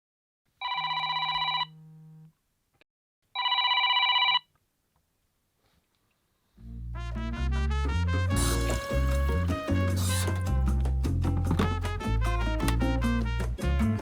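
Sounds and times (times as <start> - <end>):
telephone ringing: 0.6 - 1.8, 3.4 - 4.5
music: 6.6 - 14.0.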